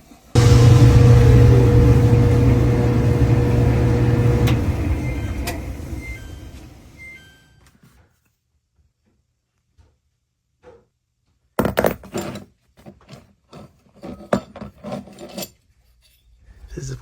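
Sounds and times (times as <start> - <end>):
clothes dryer humming: 0.1 - 7.3.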